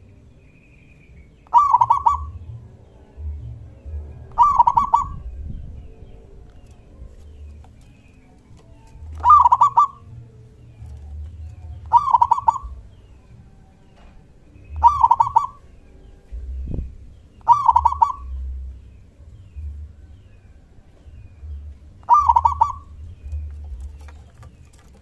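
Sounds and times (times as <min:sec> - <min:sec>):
dove cooing: 0:01.4 - 0:02.5, 0:04.2 - 0:05.4, 0:06.1 - 0:13.2, 0:14.7 - 0:16.8, 0:17.4 - 0:18.6, 0:22.0 - 0:25.0.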